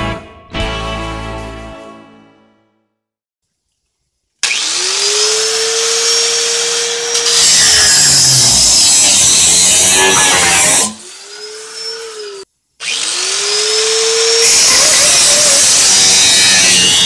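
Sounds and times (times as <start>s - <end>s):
angle grinder whining: 4.4s - 17.0s
grinder cutting sheet metal: 4.4s - 17.0s.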